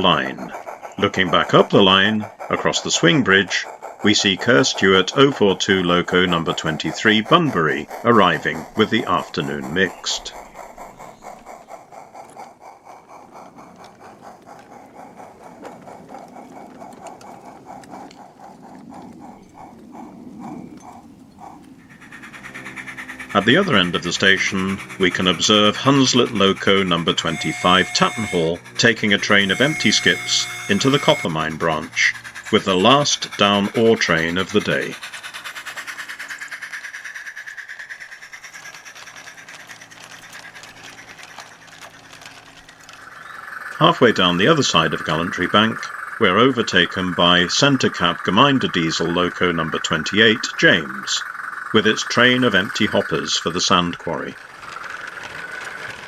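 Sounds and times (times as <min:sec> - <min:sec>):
low drone: 0:00.0 - 0:36.4
model train running on track: 0:00.0 - 0:56.0.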